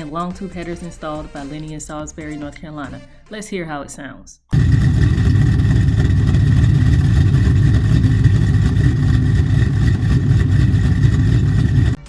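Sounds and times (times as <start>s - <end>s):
car engine running with deep exhaust: 4.5s - 12.0s.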